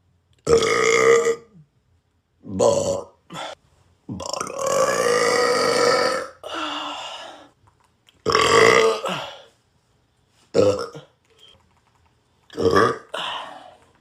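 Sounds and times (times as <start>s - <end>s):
man burping: 0.5s - 1.7s, 2.4s - 6.6s, 8.3s - 9.5s, 10.6s - 11.2s, 12.5s - 13.5s.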